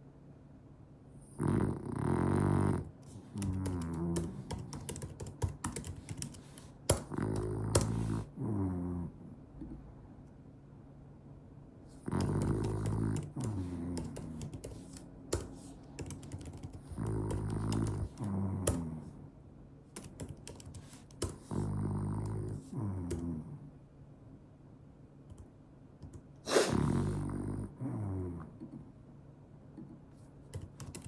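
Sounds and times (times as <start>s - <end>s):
dog snoring: 1.2s - 4.7s, 7.0s - 9.3s, 11.9s - 14.6s, 16.8s - 19.2s, 21.4s - 23.7s, 26.5s - 28.5s.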